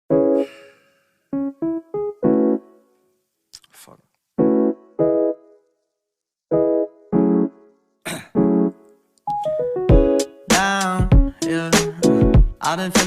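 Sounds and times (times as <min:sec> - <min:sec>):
piano chords: 0:00.1 - 0:03.0, 0:04.4 - 0:05.7, 0:06.5 - 0:07.8, 0:08.4 - 0:12.9.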